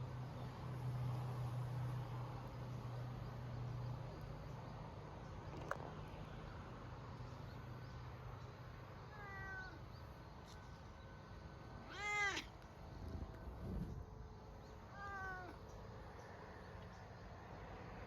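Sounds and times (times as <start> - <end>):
cat meowing: 9.1 - 9.8, 11.8 - 12.5, 14.9 - 15.6.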